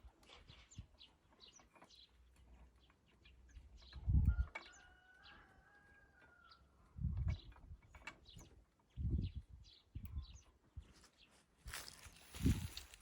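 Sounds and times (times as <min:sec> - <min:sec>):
birds chirping: 0:00.3 - 0:05.8.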